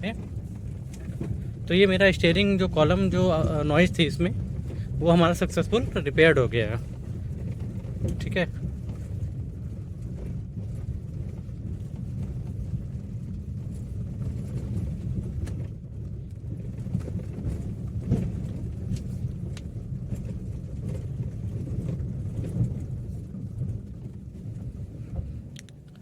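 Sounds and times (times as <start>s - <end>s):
tyres and engine rumbling: 0.0s - 26.0s.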